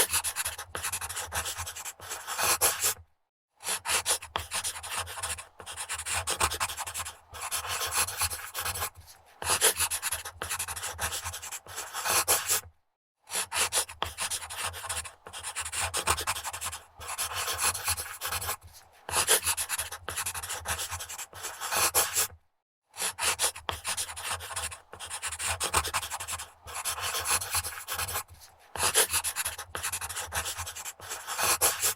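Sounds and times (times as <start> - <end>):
pencil scribbling on paper: 0.0 - 3.0, 3.6 - 12.7, 13.3 - 22.4, 23.0 - 31.9.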